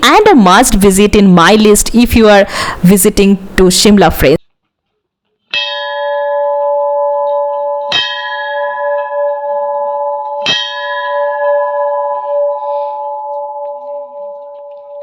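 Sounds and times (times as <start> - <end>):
temple bell ringing: 5.5 - 15.0.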